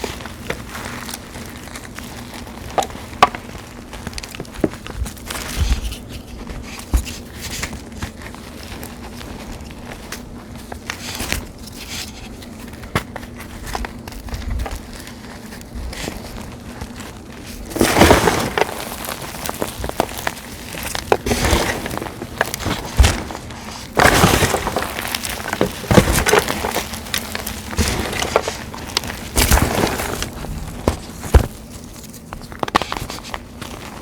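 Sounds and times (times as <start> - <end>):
chalk and leaves crunching: 14.0 - 34.0.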